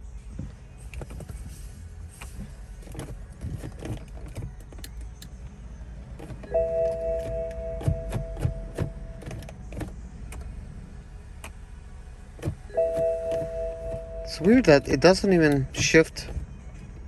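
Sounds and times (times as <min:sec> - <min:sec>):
clicks and knocks in a car: 0:02.3 - 0:05.4, 0:06.2 - 0:10.5, 0:12.4 - 0:17.0.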